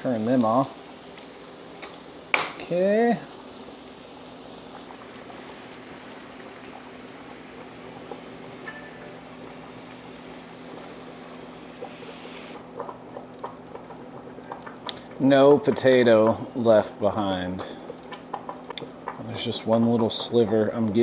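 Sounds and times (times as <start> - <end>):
food sizzling in a skillet: 0.0 - 12.6.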